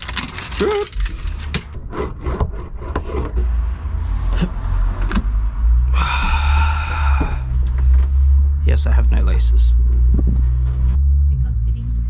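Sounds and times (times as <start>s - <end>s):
scraping and rubbing of foil sheet: 0.0s - 1.5s
steady low rumble: 3.4s - 12.0s.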